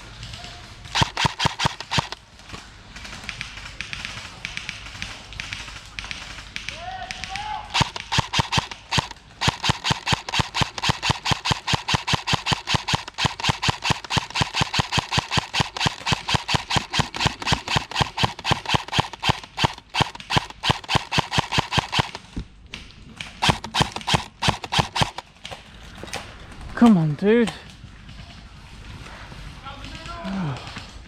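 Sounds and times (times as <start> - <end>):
airsoft gun rapid firing: 0.8 - 22.3, 23.3 - 25.4.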